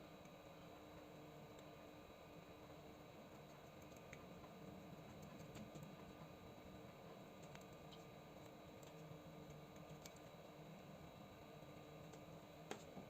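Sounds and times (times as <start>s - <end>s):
low steady hum: 0.0s - 13.0s
faint small clicks and ticks: 0.2s - 1.8s, 2.6s - 6.4s, 7.3s - 10.4s.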